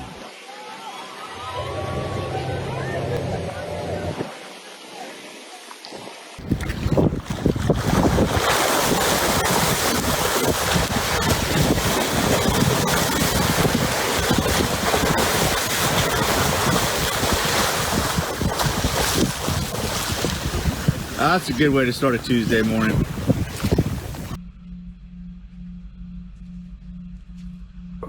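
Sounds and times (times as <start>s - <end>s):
waves splashing around boat: 5.9s - 24.4s
wind buffeting microphone: 6.4s - 24.4s.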